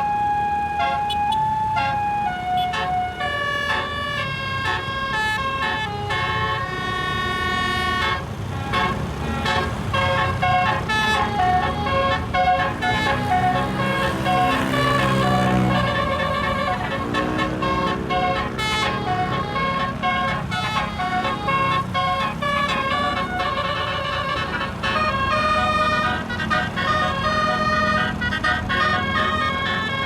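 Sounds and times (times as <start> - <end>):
multi-tone air horn melody: 0.0 - 30.0.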